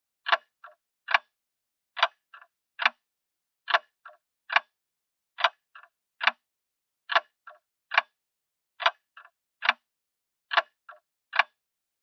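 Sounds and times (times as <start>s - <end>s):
clock ticking: 2.8s - 3.0s, 10.5s - 10.7s.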